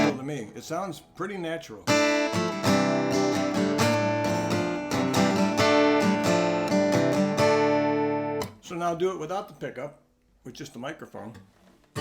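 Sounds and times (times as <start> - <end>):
amplified acoustic guitar strumming: 0.0 - 0.5, 1.9 - 8.6.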